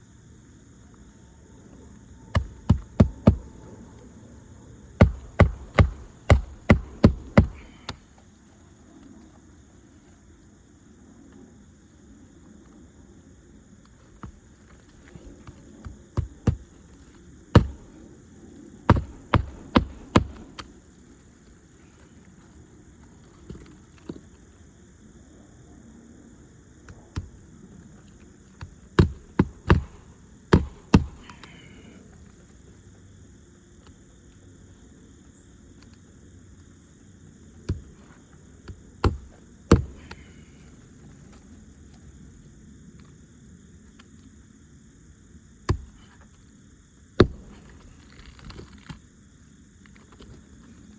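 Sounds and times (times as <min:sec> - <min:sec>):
hammer knocking on roof: 0:02.3 - 0:03.5, 0:05.0 - 0:07.9, 0:17.6 - 0:17.9, 0:18.9 - 0:20.6, 0:29.0 - 0:31.6, 0:39.0 - 0:40.2.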